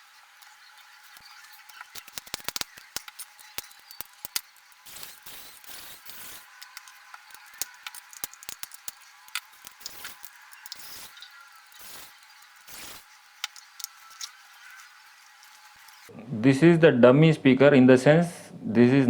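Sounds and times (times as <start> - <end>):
plastic parts clicking and tapping: 0.4 - 14.9.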